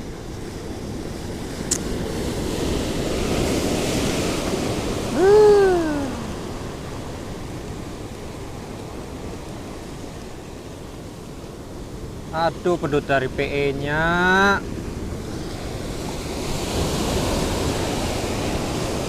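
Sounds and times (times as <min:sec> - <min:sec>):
sea waves washing onto shore: 0:00.0 - 0:19.0
short click: 0:01.7 - 0:01.9
man's drawn-out vocal sound: 0:05.1 - 0:06.3.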